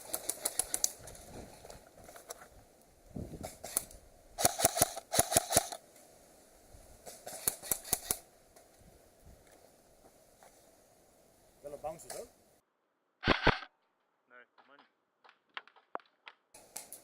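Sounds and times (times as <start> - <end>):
airsoft guns firing: 4.4 - 5.8.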